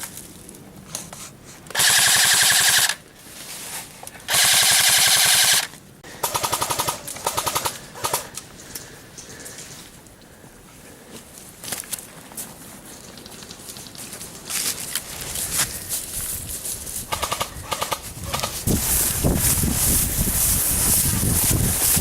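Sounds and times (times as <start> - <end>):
airsoft guns firing bursts: 1.7 - 3.0, 4.3 - 8.3, 17.1 - 18.6.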